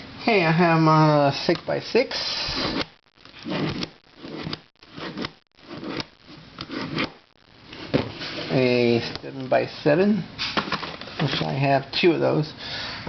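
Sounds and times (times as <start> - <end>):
puzzle cube rubbing and scraping: 2.0 - 9.1.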